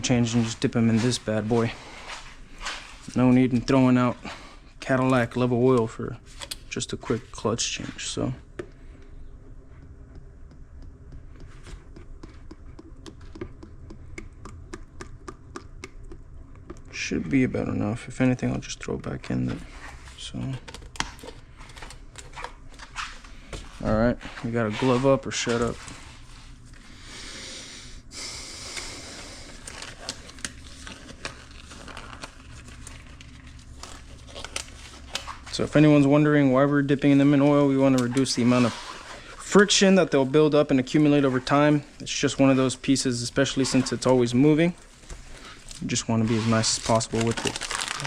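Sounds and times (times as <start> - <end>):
low steady hum: 0.0 - 48.0
gloves rustling and crinkling: 0.1 - 9.0, 28.6 - 48.0.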